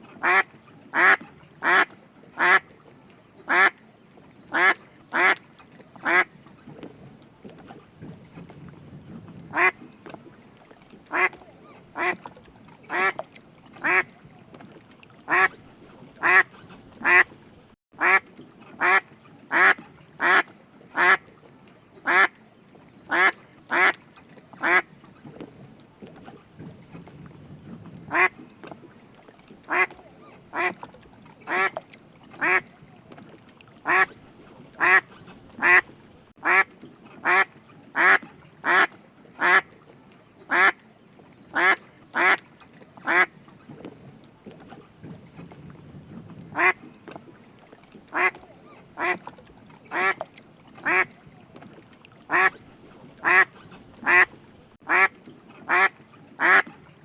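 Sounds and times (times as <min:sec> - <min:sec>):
duck quacking: 0:00.2 - 0:02.6, 0:03.5 - 0:03.8, 0:04.5 - 0:05.4, 0:06.0 - 0:06.3, 0:09.5 - 0:09.8, 0:11.1 - 0:11.4, 0:12.0 - 0:12.2, 0:13.8 - 0:14.1, 0:15.3 - 0:15.5, 0:16.2 - 0:17.3, 0:18.0 - 0:18.2, 0:18.8 - 0:21.2, 0:22.1 - 0:22.3, 0:23.1 - 0:24.0, 0:28.1 - 0:28.3, 0:29.7 - 0:29.9, 0:30.5 - 0:30.8, 0:31.5 - 0:31.8, 0:32.4 - 0:32.6, 0:33.8 - 0:34.1, 0:34.8 - 0:35.8, 0:36.4 - 0:39.6, 0:41.6 - 0:42.4, 0:46.6 - 0:46.8, 0:48.2 - 0:48.4, 0:49.0 - 0:49.2, 0:49.9 - 0:50.2, 0:50.8 - 0:51.1, 0:52.3 - 0:52.6, 0:53.2 - 0:54.3, 0:54.9 - 0:55.1, 0:55.7 - 0:56.7.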